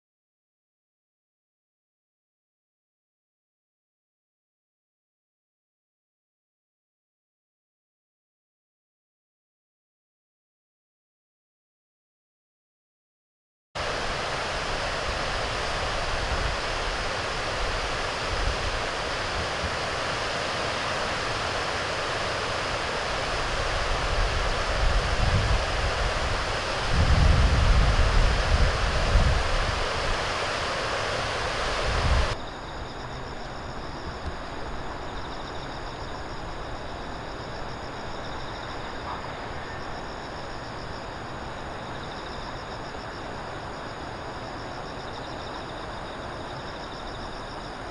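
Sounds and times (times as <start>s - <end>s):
wind rumble on microphone: 13.8s - 37.0s
steady rushing outdoor noise: 13.8s - 47.9s.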